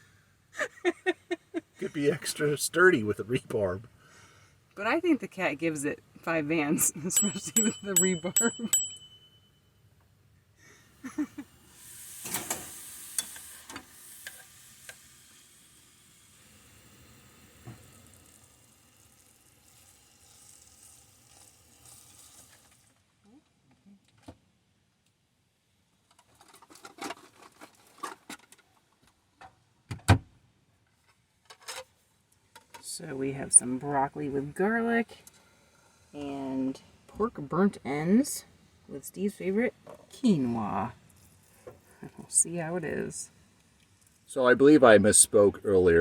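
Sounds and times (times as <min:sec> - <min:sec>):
food sizzling in a frying pan: 0:11.1 - 0:23.0.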